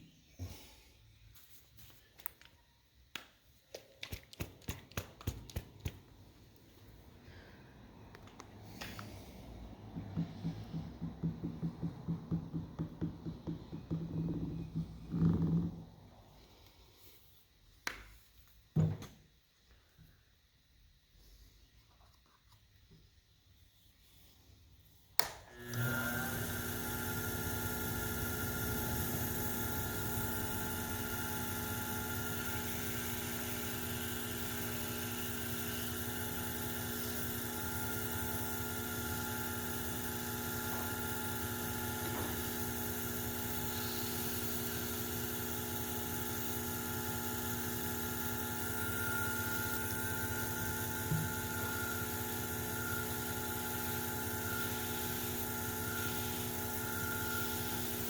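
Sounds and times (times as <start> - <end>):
machine motor humming: 9.8 - 15.8, 25.6 - 58.0.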